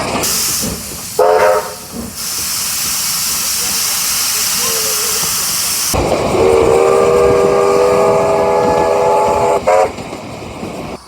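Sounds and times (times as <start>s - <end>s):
steam hissing: 0.0s - 11.0s
chime steam whistle: 6.3s - 9.9s.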